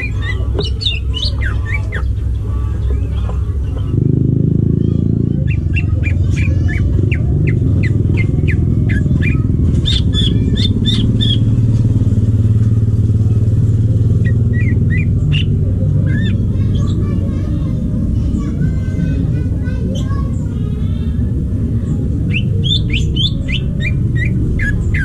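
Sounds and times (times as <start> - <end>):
bird chirping: 0.0 - 4.2, 4.9 - 12.4, 13.3 - 17.1, 21.9 - 25.0
low mechanical rumble: 0.0 - 25.0.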